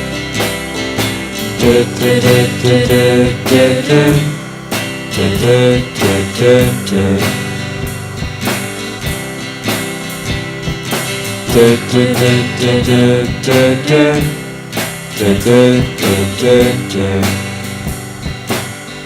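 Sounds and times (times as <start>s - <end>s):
instrumental song with guitar and drums: 0.0s - 19.0s.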